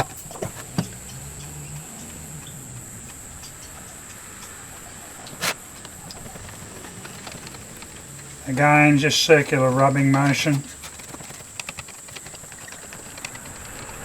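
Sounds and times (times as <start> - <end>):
steady high-pitched whine: 0.0 - 14.0
small ticks: 0.1 - 14.0
rag rubbing on plastic lens: 4.4 - 14.0.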